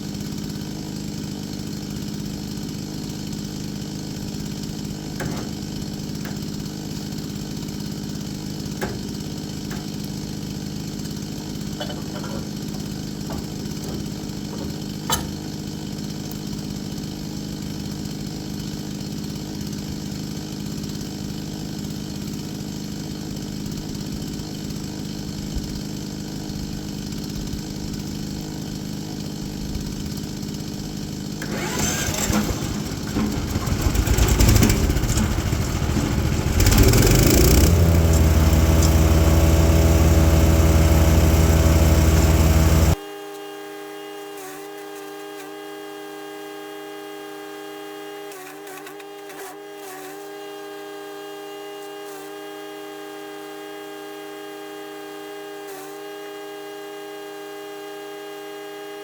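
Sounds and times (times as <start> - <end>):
wood chipper engine running: 0.0 - 43.2
rough grinding of material: 4.3 - 16.2, 31.4 - 43.0.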